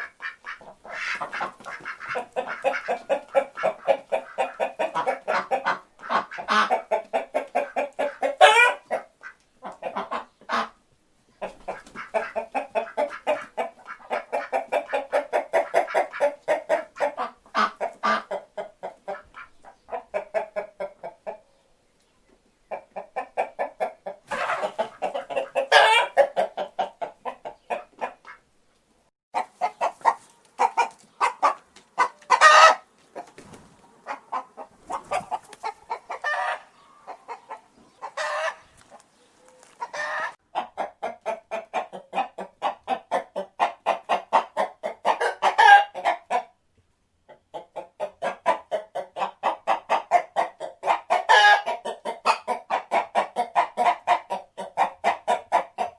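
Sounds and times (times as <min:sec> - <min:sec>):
loud high chicken calls: 0:00.0 - 0:10.8, 0:23.4 - 0:26.9, 0:29.4 - 0:42.5, 0:43.1 - 0:46.5, 0:48.2 - 0:55.9
chickens clucking: 0:00.0 - 0:55.9.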